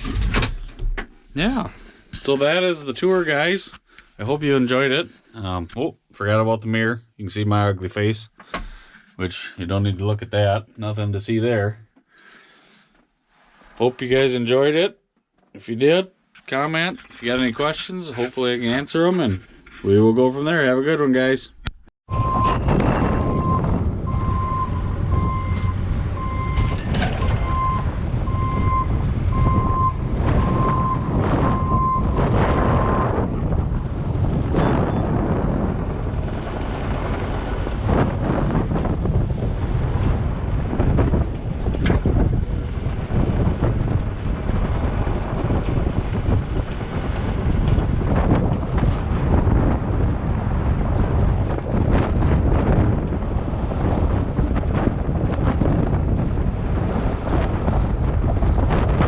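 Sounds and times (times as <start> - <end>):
wind rumbling on microphone: 0.0 - 5.3, 22.1 - 59.0
reverse alarm beeping: 22.1 - 32.2.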